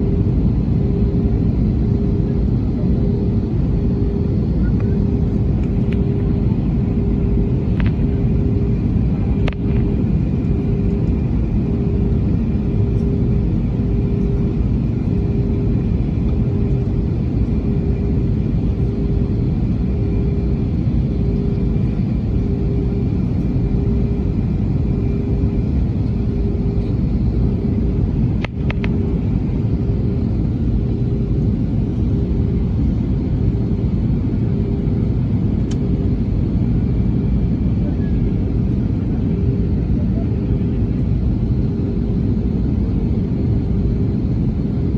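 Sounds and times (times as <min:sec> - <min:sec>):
faint pulsing hum: 0:00.0 - 0:44.9
jet engines rumbling: 0:00.0 - 0:44.9.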